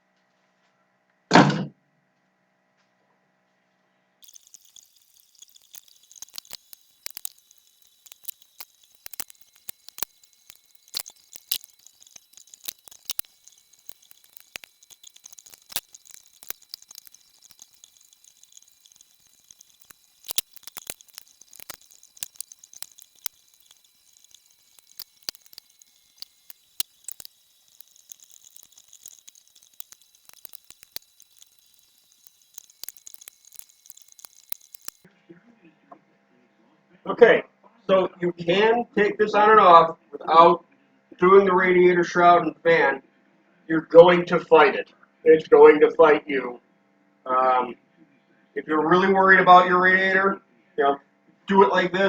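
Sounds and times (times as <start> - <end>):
faint steady hiss: 4.2 - 40.6, 47.3 - 52.0.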